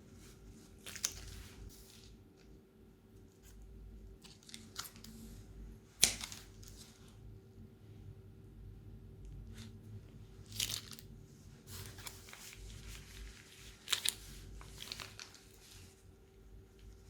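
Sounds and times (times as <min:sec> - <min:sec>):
plastic bags crinkling: 0:10.4 - 0:11.1, 0:11.7 - 0:15.8.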